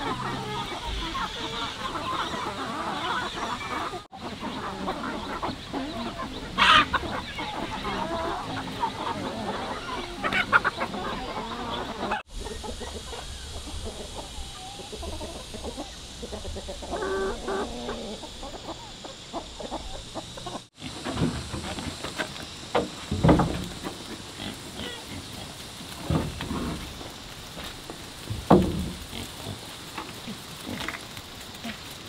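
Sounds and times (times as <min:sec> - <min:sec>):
chicken squawks: 0:00.0 - 0:20.7
chickens clucking: 0:00.0 - 0:32.0.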